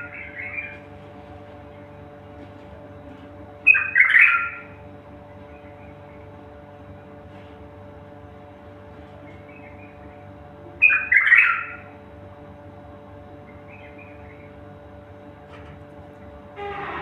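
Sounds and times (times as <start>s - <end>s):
bird squawking: 0.0s - 0.8s, 3.6s - 4.8s, 10.8s - 11.9s, 13.5s - 14.6s
steady low hum: 0.0s - 17.0s.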